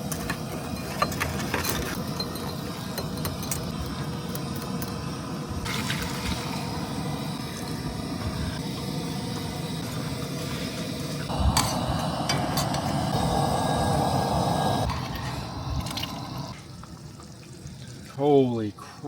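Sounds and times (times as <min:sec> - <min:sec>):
steady low hum: 0:01.8 - 0:16.9
liquid being poured: 0:05.6 - 0:07.8.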